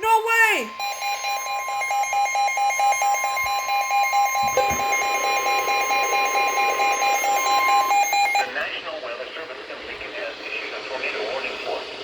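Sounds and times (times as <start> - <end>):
steady high alert tone: 0.0 - 8.6
rapidly pulsing alarm beep: 0.3 - 8.5.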